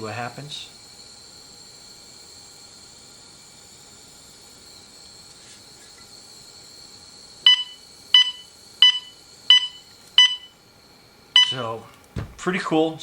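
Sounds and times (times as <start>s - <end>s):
gas detector alarm beeps: 7.4s - 10.6s, 11.4s - 11.8s.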